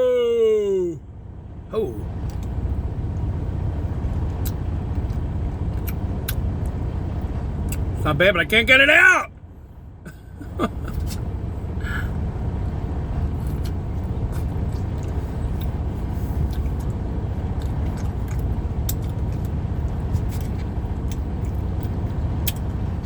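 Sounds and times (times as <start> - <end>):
car engine rumble from inside: 0.0 - 23.0
soft chewing: 4.2 - 6.8, 13.2 - 23.0.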